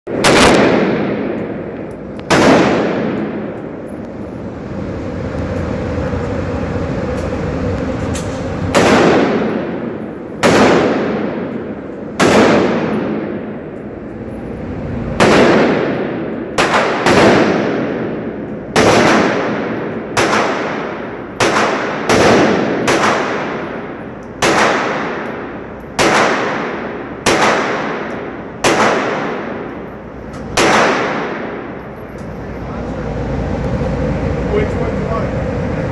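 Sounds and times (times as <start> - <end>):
gunshots with echoing tail: 0.1 - 4.0, 8.7 - 13.8, 15.1 - 29.8, 30.4 - 31.8.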